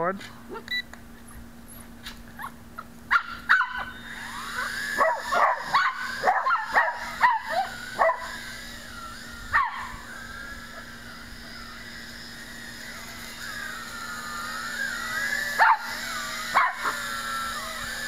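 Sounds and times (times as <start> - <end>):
dog yelping: 0.5 - 8.4, 9.5 - 10.9, 15.4 - 17.8
dog whining: 0.5 - 11.6.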